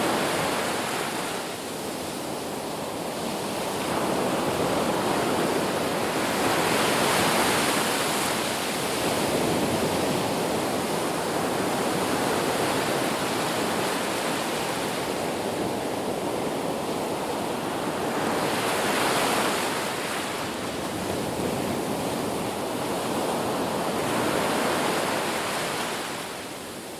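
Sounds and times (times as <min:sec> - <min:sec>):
sea waves breaking on shore: 0:00.0 - 0:26.9.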